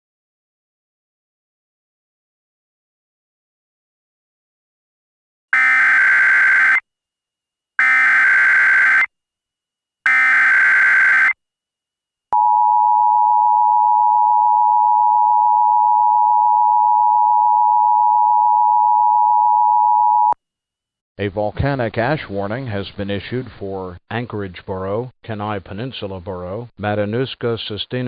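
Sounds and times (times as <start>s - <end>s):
buzzy digital data screech: 10.1s - 11.3s.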